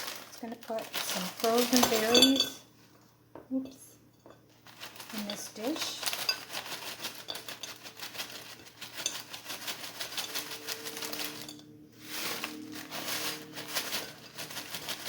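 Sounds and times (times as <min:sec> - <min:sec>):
frozen berries rattling into a dish: 0:00.0 - 0:02.6, 0:04.6 - 0:15.0.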